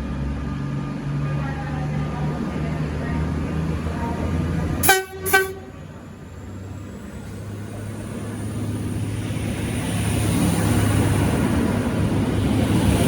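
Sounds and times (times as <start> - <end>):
train rumble: 0.0 - 13.0
train horn toots: 4.8 - 5.8.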